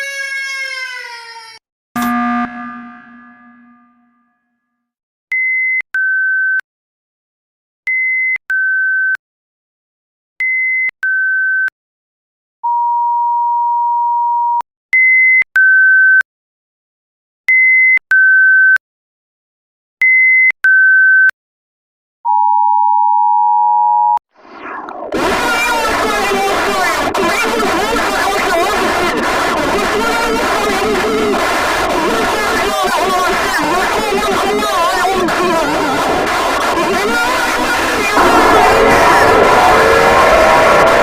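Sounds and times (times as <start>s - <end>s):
electronic alarm tones: 2.0s - 4.2s.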